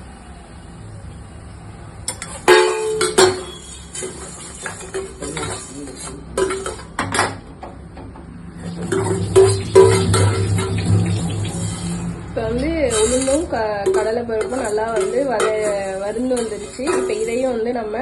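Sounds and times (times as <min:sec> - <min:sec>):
metal utensil scraping a pan: 0:02.1 - 0:07.2, 0:08.6 - 0:18.0
lentils stirred dry-roasting: 0:03.5 - 0:06.9, 0:08.6 - 0:18.0.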